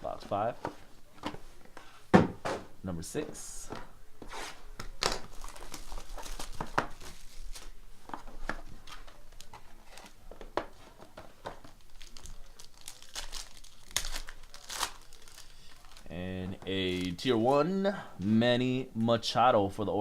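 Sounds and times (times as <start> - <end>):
foil wrapper and box tearing: 12.0 - 16.0.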